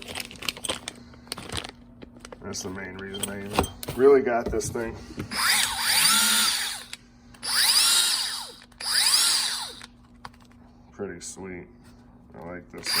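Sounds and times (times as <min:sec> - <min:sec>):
cordless tool motor whining: 0:05.3 - 0:09.9.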